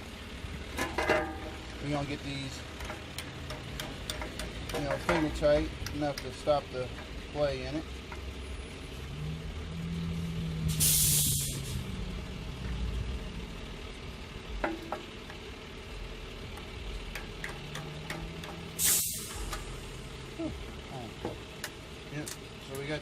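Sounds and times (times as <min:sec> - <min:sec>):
loud bursts of hissing: 0:10.6 - 0:11.9, 0:18.7 - 0:19.8.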